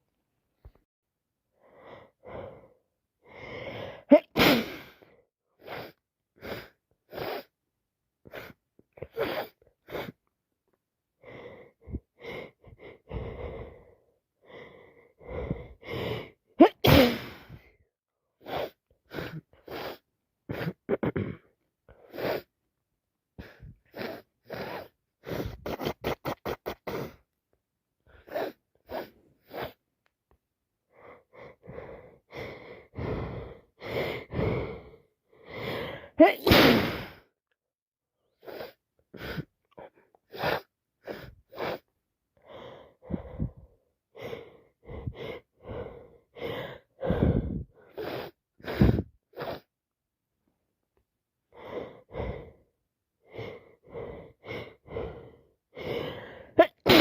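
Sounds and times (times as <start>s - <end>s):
gasping in-breaths: 1.6s - 7.5s, 11.2s - 17.8s, 30.9s - 36.4s, 38.4s - 49.7s, 51.5s - 56.9s
woman sneezing: 4.1s - 4.8s, 16.6s - 17.4s, 36.2s - 37.2s, 56.6s - 57.0s
woman sniffing: 4.1s - 5.0s, 16.6s - 17.6s, 23.9s - 27.2s, 28.2s - 29.8s, 40.2s - 41.9s, 47.0s - 49.7s, 55.8s - 57.0s.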